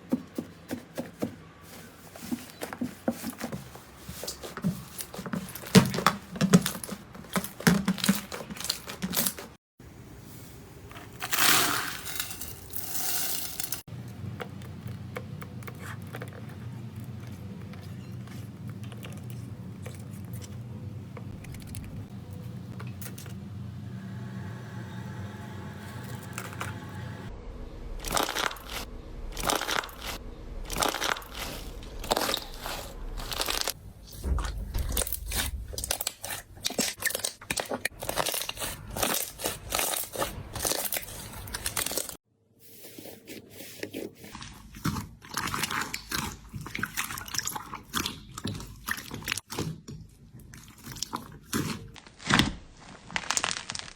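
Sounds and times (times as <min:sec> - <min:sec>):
steady low hum: 0:13.9 - 0:36.6
crunchy slime squeezed by hand: 0:51.4 - 0:53.9.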